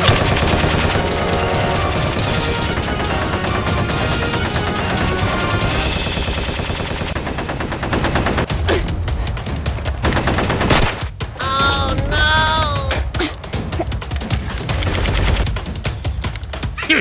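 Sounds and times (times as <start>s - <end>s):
rapid machine-gun fire: 0.0s - 8.5s, 10.0s - 11.2s, 14.2s - 15.6s.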